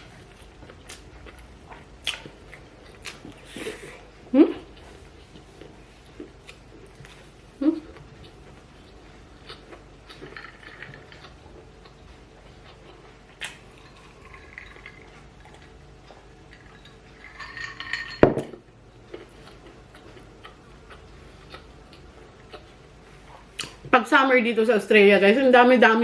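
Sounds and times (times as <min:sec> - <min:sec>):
cutlery clinking on a plate: 0:17.2 - 0:18.6.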